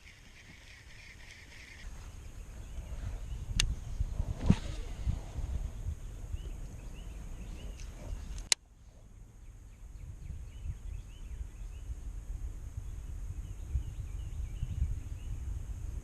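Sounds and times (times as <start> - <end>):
small birds chirping: 0.0 - 4.1, 5.6 - 12.0
wind rumble on microphone: 0.0 - 16.0.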